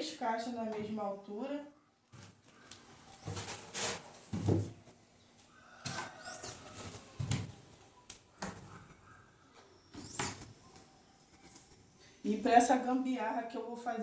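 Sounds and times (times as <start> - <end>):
cardboard scraping and rustling: 3.1 - 4.8
cardboard boxes thumping: 4.3 - 4.8.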